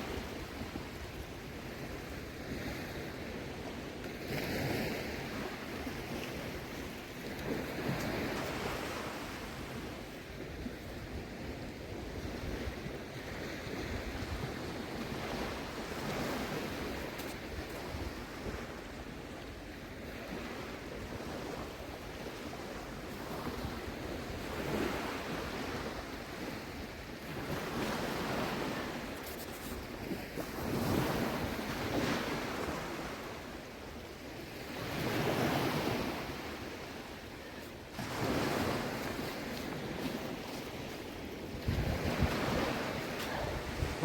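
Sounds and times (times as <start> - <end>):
sea water swishing and surging: 0.0 - 44.0
wind on microphone: 38.1 - 44.0.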